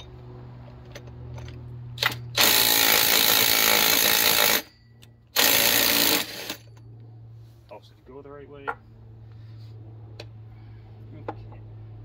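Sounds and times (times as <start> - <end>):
impact wrench hammering: 2.0 - 6.8.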